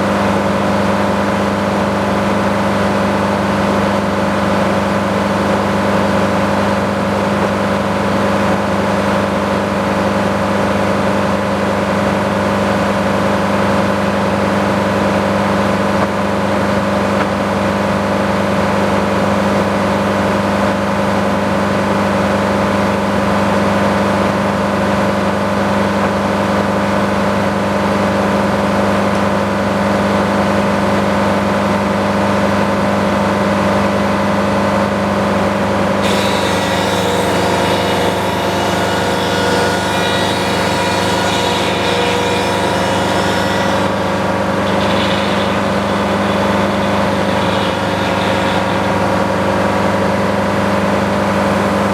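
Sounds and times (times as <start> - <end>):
sawmill engine hum: 31.7 - 51.9.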